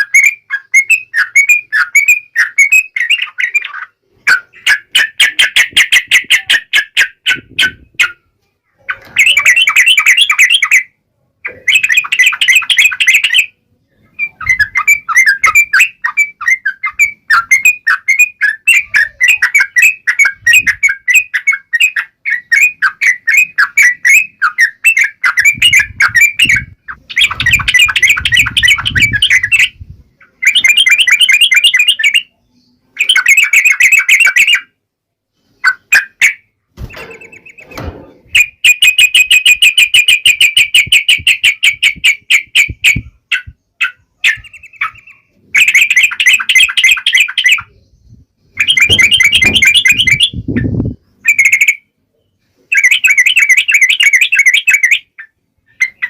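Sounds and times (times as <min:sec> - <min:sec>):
bulbul singing chattering runs: 0:48.6 - 0:51.8.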